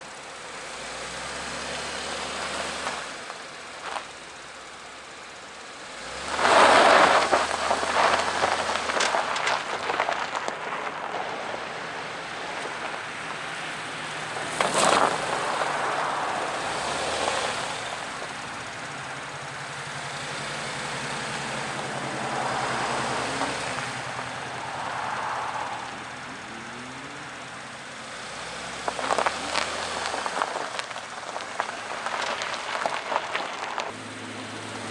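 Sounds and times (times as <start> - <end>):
car engine pulling under load: 0.0 - 34.9
tyres scrabbling on loose ground: 2.4 - 4.6, 6.1 - 19.7, 28.4 - 34.0.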